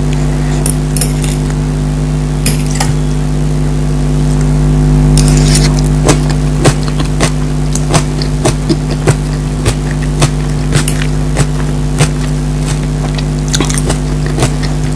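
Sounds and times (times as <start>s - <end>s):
steady low hum: 0.0s - 14.9s
crunchy chewing: 5.2s - 14.9s.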